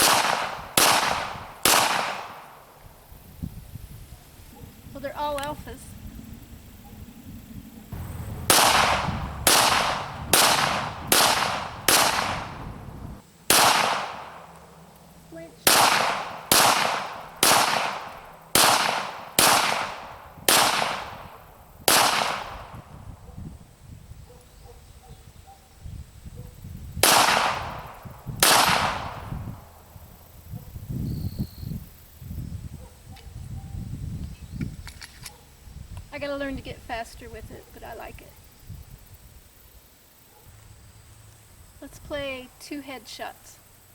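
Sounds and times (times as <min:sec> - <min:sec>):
pistol shots with echo: 0:00.0 - 0:02.7, 0:08.0 - 0:12.7, 0:13.5 - 0:14.5, 0:15.6 - 0:22.8, 0:27.0 - 0:29.3.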